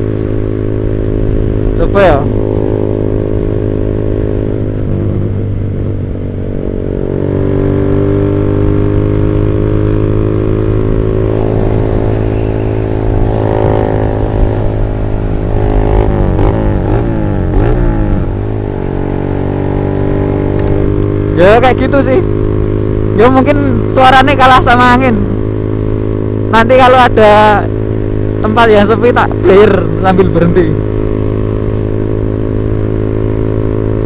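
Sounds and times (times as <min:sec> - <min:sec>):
motorcycle engine revving: 0:00.0 - 0:34.0.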